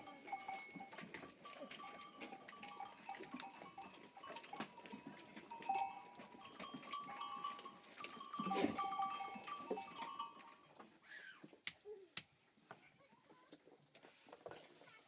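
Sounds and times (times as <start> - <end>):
animal bells clinking: 0.0 - 11.0.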